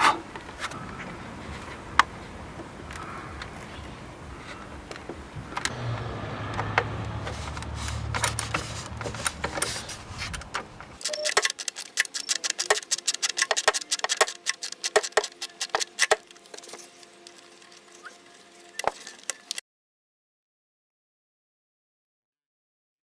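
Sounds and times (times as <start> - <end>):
low steady hum: 0.2 - 11.0
metallic clicks of hand tools: 8.1 - 19.6.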